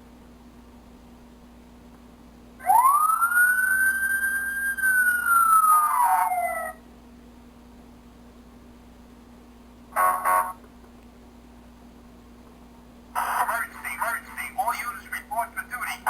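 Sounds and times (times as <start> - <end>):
toy electronic siren wailing: 2.6 - 6.8.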